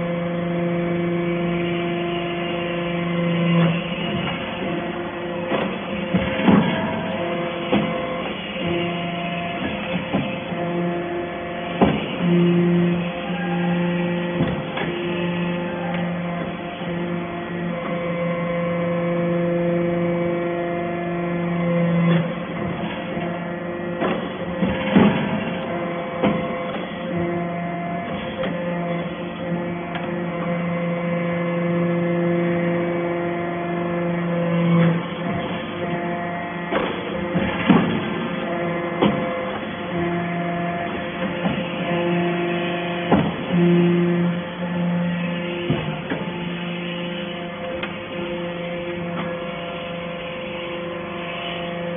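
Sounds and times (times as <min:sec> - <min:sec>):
hydraulic power unit humming: 0:00.0 - 0:51.9
knocks and clanks: 0:03.3 - 0:10.9, 0:11.7 - 0:13.2, 0:14.3 - 0:15.3, 0:22.0 - 0:27.4, 0:34.5 - 0:40.1, 0:40.8 - 0:43.9.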